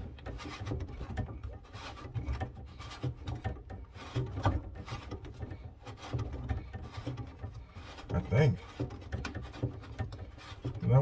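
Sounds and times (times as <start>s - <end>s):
hands rubbing and scraping plastic: 0.0s - 11.0s.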